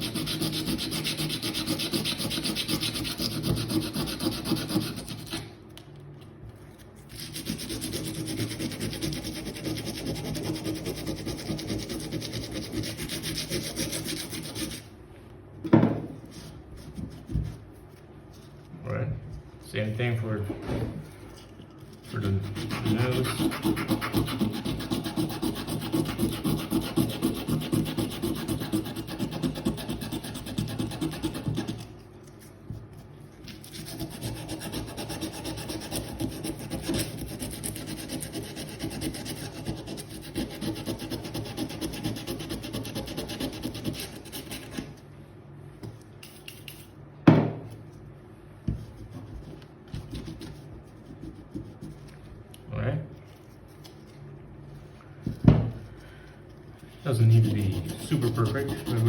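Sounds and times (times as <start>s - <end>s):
sandpaper rubbing on metal: 0.0s - 5.4s, 7.1s - 14.8s, 22.0s - 31.8s, 33.6s - 44.8s, 57.0s - 59.0s.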